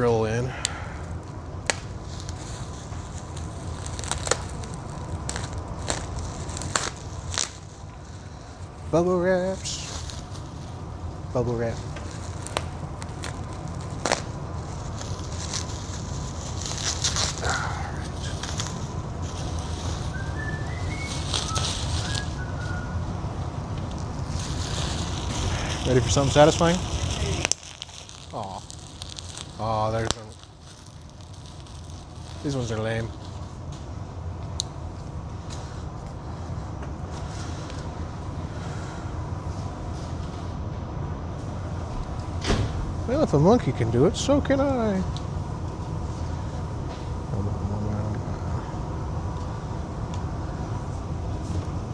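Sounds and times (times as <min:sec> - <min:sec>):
low background rumble: 0:00.0 - 0:51.9
bubble wrap crinkling: 0:01.1 - 0:36.3.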